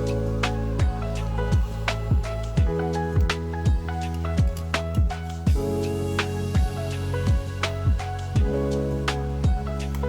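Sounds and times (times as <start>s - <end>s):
background music with sustained tones: 0.0s - 10.0s
kick drum beat: 0.8s - 5.8s, 6.6s - 8.6s, 9.4s - 9.7s.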